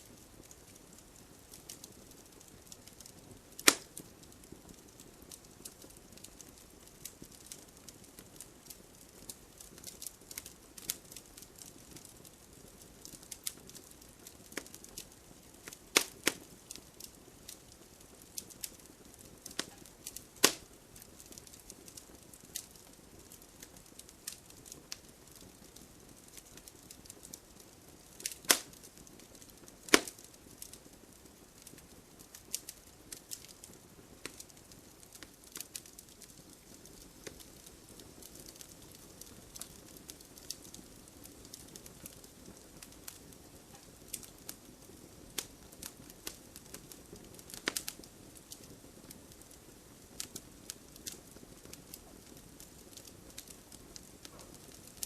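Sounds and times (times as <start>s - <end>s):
wood fire crackling: 0.0s - 55.0s
sharp fire pops: 1.5s - 12.1s, 14.5s - 17.7s, 18.4s - 25.5s, 28.2s - 30.7s, 31.6s - 34.6s, 35.2s - 44.6s, 45.4s - 49.2s, 51.0s - 55.0s.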